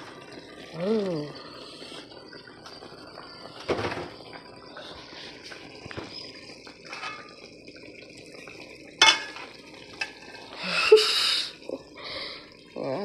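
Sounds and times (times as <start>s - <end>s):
pot and utensils clattering: 5.9s - 7.5s, 9.0s - 10.4s.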